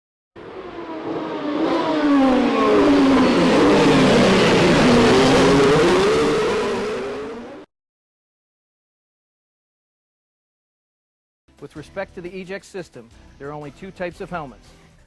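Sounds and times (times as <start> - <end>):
vehicle engine revving: 0.4 - 7.7.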